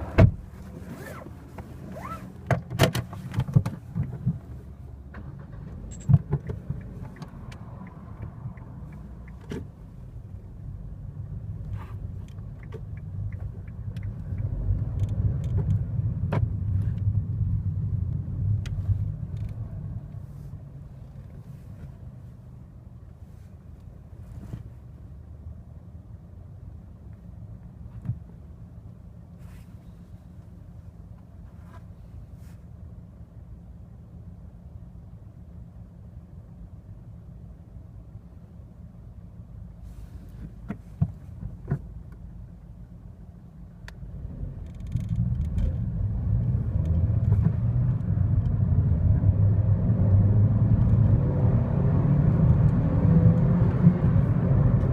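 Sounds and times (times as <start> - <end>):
road and engine rumble: 0.0 - 54.9
seat creaks and clicks: 0.1 - 9.8, 11.6 - 17.1, 18.6 - 20.2, 43.9 - 45.9.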